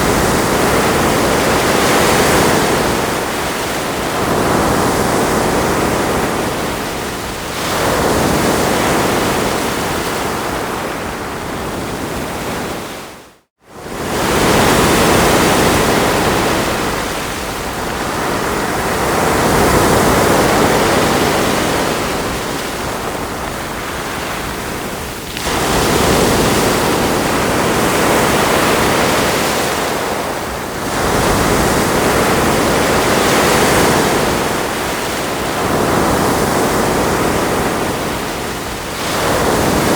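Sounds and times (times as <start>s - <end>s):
ocean waves breaking on shore: 0.0s - 39.9s.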